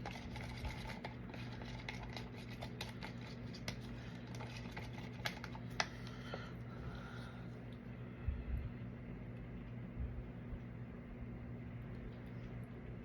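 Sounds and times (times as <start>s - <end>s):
stir stick scraping mixing cup: 0.0s - 5.9s
low hum: 5.5s - 13.0s.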